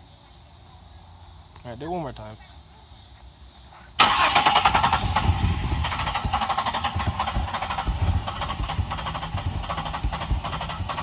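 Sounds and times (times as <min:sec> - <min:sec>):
car engine cranking on starter: 0:04.0 - 0:11.0.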